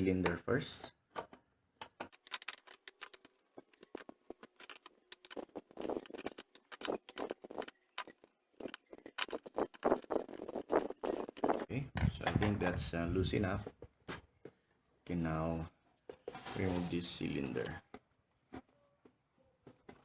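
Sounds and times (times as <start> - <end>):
metallic wrench clicks and taps: 2.2 - 11.6.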